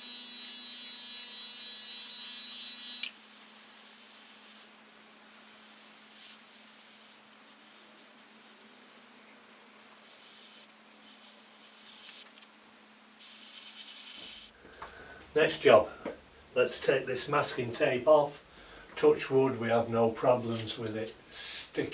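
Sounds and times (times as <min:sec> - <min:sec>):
airbrush spraying hiss: 0:01.3 - 0:09.1, 0:09.8 - 0:12.3, 0:13.2 - 0:14.8.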